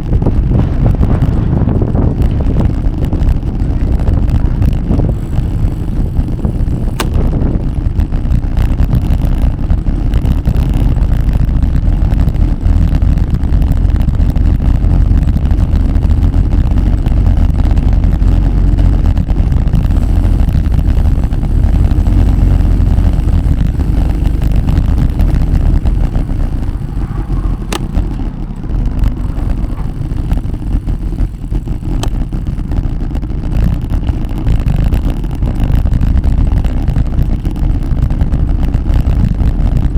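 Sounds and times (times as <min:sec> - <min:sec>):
bicycle road noise: 0:00.0 - 0:39.9
wind buffeting microphone: 0:00.0 - 0:39.9
sharp clicks: 0:05.1 - 0:07.4, 0:19.5 - 0:32.7.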